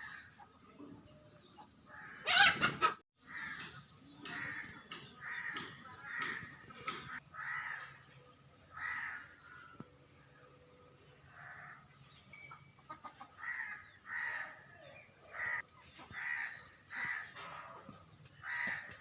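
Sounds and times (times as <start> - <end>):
crow cawing: 3.2 - 3.7, 4.3 - 8.0, 8.7 - 9.6, 13.4 - 14.6, 15.4 - 17.4, 18.4 - 19.0.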